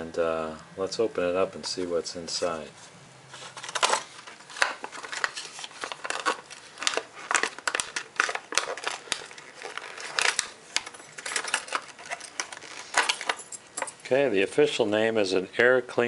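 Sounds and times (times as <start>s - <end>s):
package crinkling: 3.4s - 13.5s.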